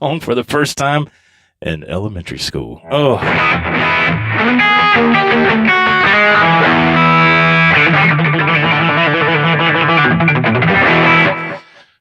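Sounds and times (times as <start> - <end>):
distorted electric guitar: 2.8 - 11.8.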